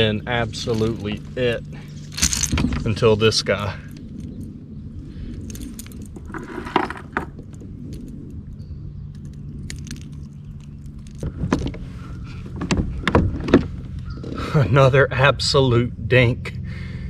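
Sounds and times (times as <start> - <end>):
low steady hum: 0.0 - 17.0
fishing tackle clicks and knocks: 0.5 - 3.2, 9.1 - 14.4.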